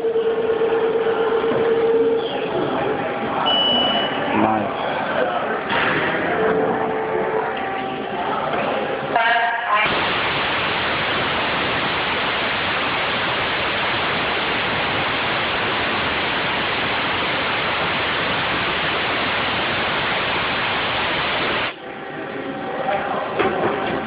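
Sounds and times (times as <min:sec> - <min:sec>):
coolant spraying rushing hiss: 0:09.8 - 0:21.8.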